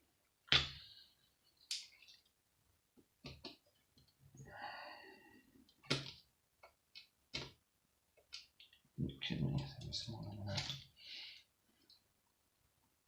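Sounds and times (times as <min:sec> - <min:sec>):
soft breathy hiss: 0:04.4 - 0:05.6, 0:10.9 - 0:11.8.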